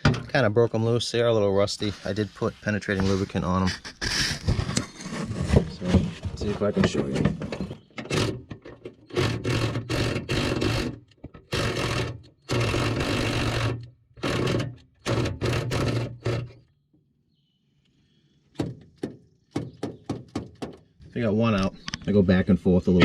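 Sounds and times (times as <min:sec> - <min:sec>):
ratchet ratcheting: 0:08.0 - 0:16.6.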